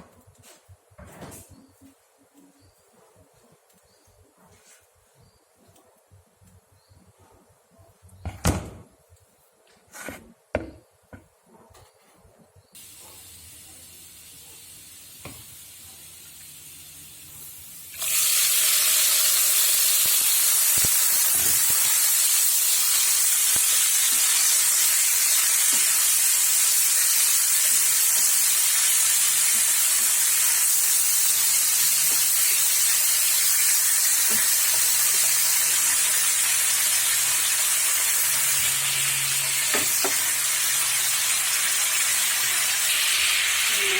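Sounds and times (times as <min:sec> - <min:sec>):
food frying in hot oil: 0:12.8 - 0:43.9.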